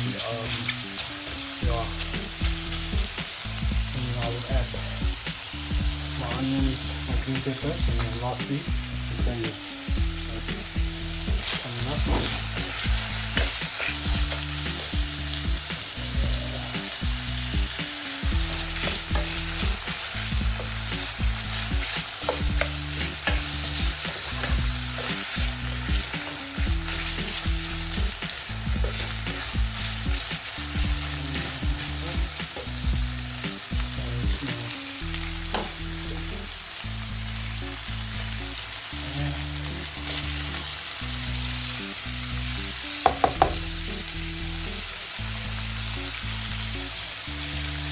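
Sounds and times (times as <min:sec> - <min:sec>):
meat sizzling in hot oil: 0:00.0 - 0:47.9
low bass tones: 0:01.6 - 0:47.9
stirring in a pan: 0:10.5 - 0:34.4, 0:39.7 - 0:41.6.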